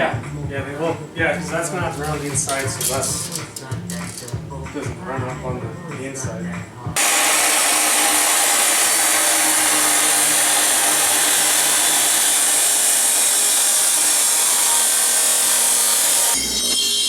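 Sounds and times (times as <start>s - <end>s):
angle grinder grinding steel: 1.9s - 4.4s, 7.0s - 17.0s.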